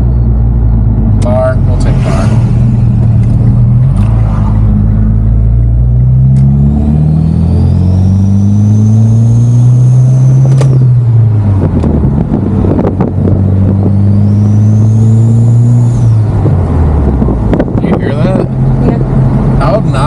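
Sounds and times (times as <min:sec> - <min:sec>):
car engine accelerating: 0:00.0 - 0:20.0
high turbo whistle: 0:13.9 - 0:16.3.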